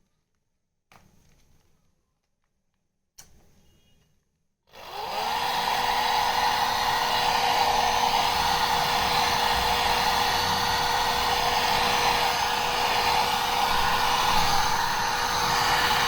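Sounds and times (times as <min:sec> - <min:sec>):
hair dryer running: 0:04.8 - 0:16.0.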